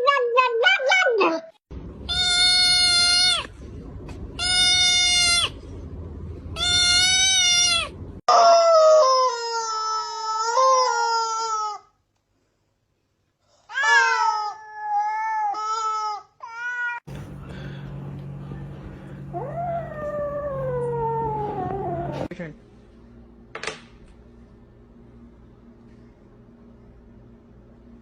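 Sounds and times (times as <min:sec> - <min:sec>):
cat meowing: 0:06.6 - 0:07.9.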